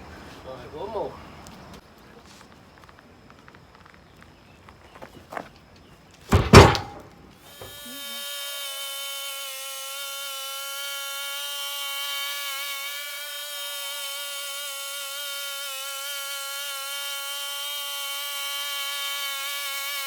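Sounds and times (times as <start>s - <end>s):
heavy thud: 6.3s - 7.2s
knocks: 6.3s - 7.8s
sawmill high whine: 6.3s - 20.0s.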